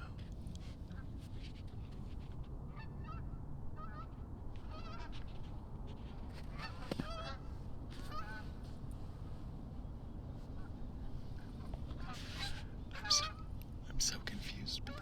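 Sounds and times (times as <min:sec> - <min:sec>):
geese honking: 0:13.0 - 0:13.4.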